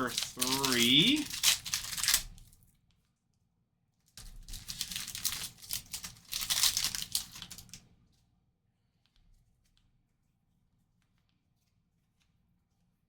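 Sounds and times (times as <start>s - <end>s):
foil wrapper crinkling and tearing: 0.0s - 2.6s, 4.2s - 7.8s.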